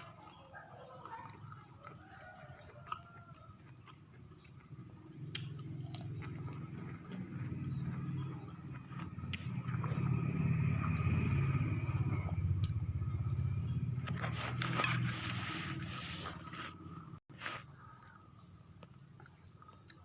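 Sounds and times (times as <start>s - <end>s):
low engine rumble: 4.7s - 18.8s
scraping crunch with click: 14.0s - 16.8s.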